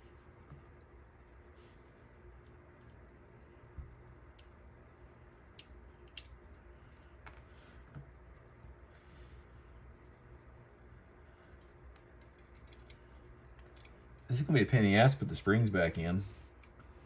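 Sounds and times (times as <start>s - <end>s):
low steady hum: 0.0s - 17.0s
small clicks of lock pins: 5.6s - 7.1s, 11.9s - 14.2s.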